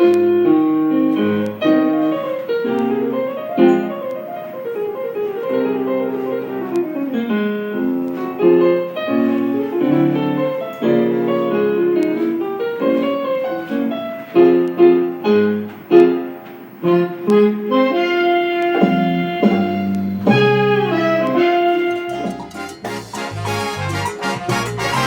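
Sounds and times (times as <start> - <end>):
salsa piano music: 0.0 - 25.0
sharp accented band hits: 18.7 - 23.4.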